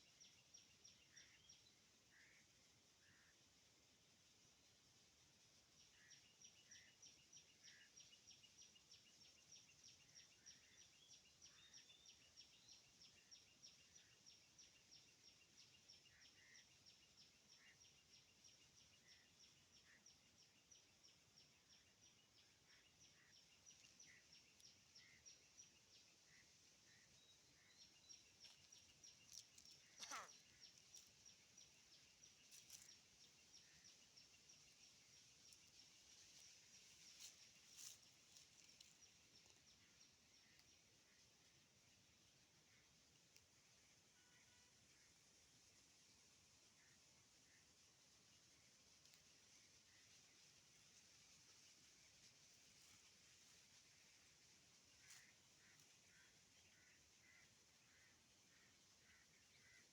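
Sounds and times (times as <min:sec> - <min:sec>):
short bird calls: 0:29.6 - 0:30.8.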